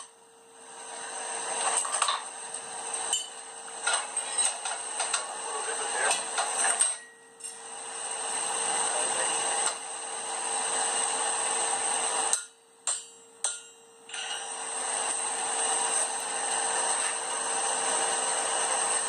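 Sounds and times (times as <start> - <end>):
rushing machine noise: 7.6 - 12.3, 14.2 - 19.0.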